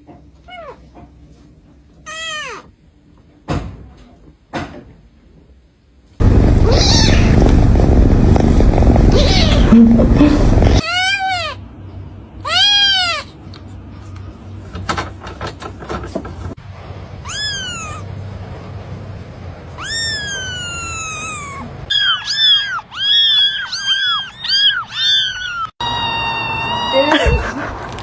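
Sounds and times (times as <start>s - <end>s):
cat meowing: 2.1s - 2.7s, 6.2s - 11.6s, 12.4s - 13.3s, 17.2s - 18.1s, 19.8s - 27.2s.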